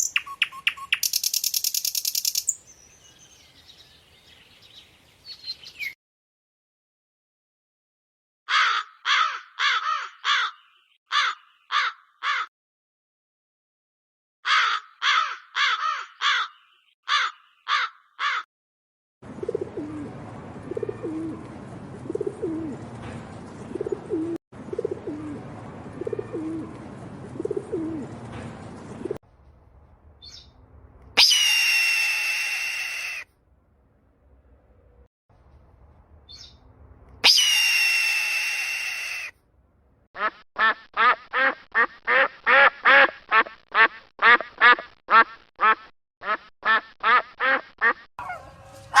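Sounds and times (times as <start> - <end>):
low repeated bird calls: 0.0 - 6.0
crow cawing: 8.5 - 12.5, 14.4 - 18.5
loud shrill bird call: 31.2 - 33.2, 37.2 - 39.3
duck quacking: 40.2 - 49.0.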